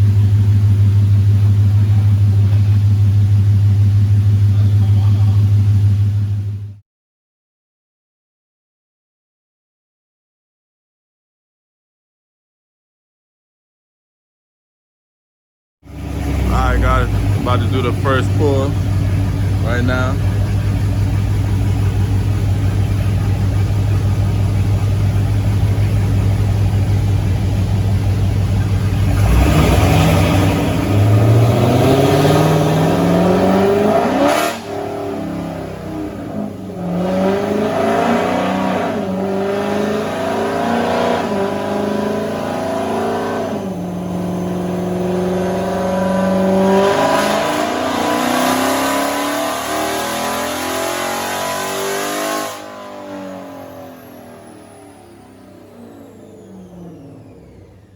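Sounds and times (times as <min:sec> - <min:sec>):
car engine revving and accelerating: 0:15.9 - 0:57.9.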